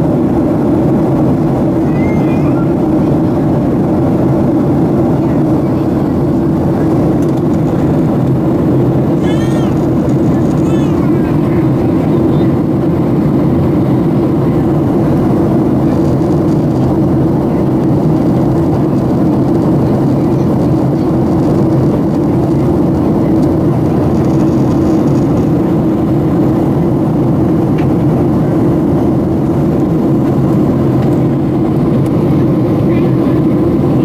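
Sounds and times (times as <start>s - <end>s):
jet airliner cabin drone: 0.0s - 34.0s.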